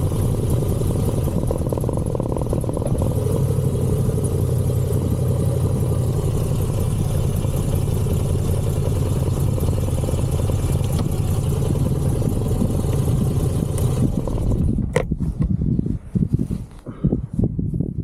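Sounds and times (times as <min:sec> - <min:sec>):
motorcycle engine idling: 0:00.0 - 0:15.1.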